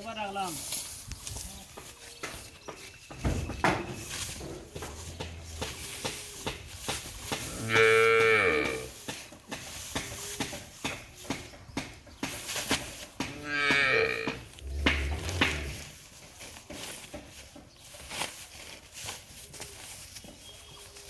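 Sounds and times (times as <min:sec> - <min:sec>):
calf mooing: 0:07.5 - 0:08.9, 0:13.4 - 0:15.8.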